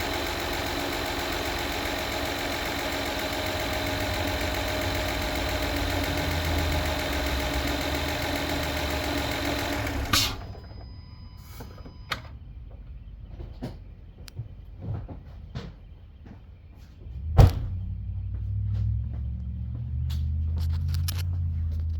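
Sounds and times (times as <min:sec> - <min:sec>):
car engine running: 0:00.0 - 0:10.7, 0:17.2 - 0:21.9.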